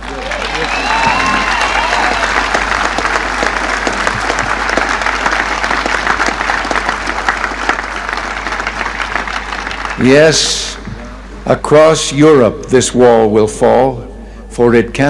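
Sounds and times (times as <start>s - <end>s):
crowd applauding: 0.0s - 10.8s.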